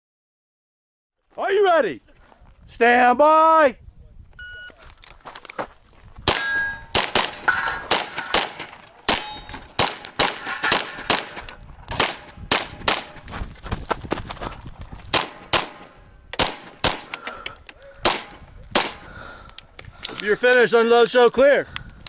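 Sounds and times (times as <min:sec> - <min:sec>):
steel targets clanging: 0:06.3 - 0:12.3
pistol shots: 0:06.3 - 0:13.2, 0:15.1 - 0:17.2, 0:18.0 - 0:19.1.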